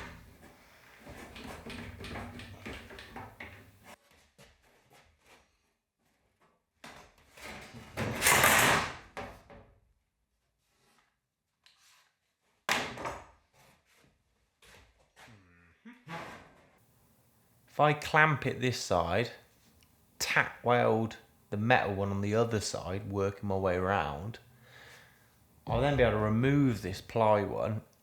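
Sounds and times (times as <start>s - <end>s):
wood and metal knocks and rattles: 0.0s - 3.9s.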